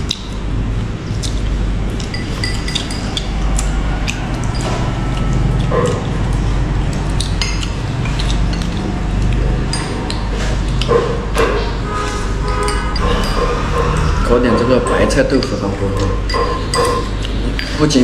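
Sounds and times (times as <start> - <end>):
steady low hum: 0.0 - 18.0
utensils clinking on plates: 1.1 - 18.0.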